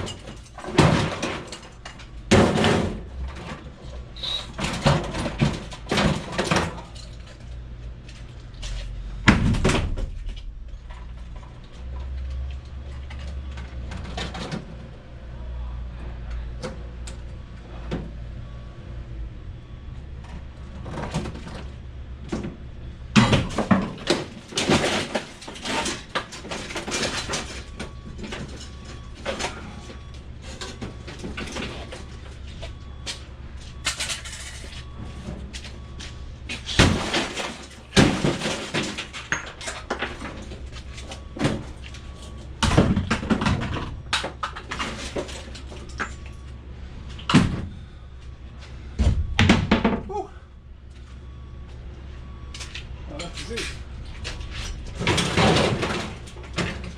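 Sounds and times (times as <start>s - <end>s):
scrap knocking and clattering: 0.0s - 7.4s
steady low hum: 0.0s - 56.9s.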